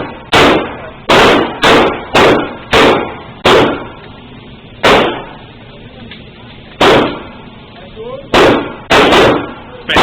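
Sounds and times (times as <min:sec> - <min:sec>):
gunshots with echo: 0:00.0 - 0:04.0, 0:04.8 - 0:05.4, 0:06.8 - 0:07.4, 0:08.3 - 0:10.0.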